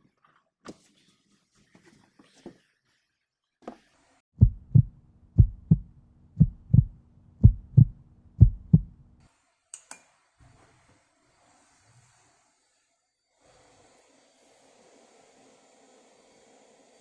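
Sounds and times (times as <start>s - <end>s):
heartbeat thumps: 4.4s - 9.0s
low hum: 4.4s - 9.2s.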